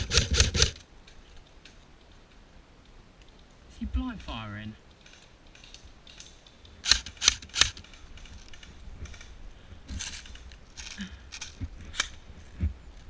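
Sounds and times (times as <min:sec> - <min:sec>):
airsoft gun shots: 0:00.0 - 0:00.8.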